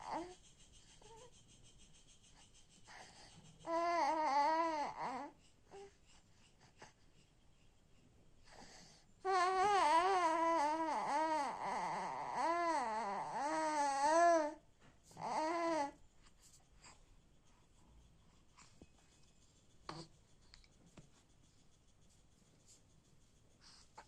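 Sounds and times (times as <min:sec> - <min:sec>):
baby whining: 0:03.6 - 0:05.9, 0:09.2 - 0:14.6, 0:15.2 - 0:16.0.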